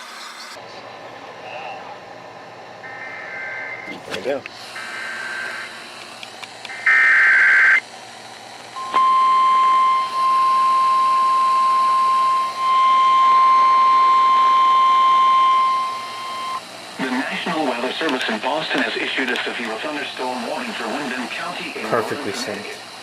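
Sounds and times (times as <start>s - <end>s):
steady warning alarm tone: 2.8s - 3.9s, 4.7s - 5.9s, 6.7s - 7.8s, 8.7s - 16.7s.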